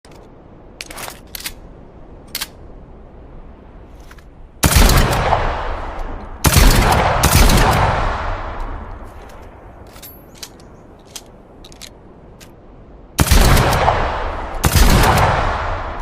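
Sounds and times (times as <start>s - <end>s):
shotgun shots echoing: 4.6s - 8.8s, 13.2s - 16.0s.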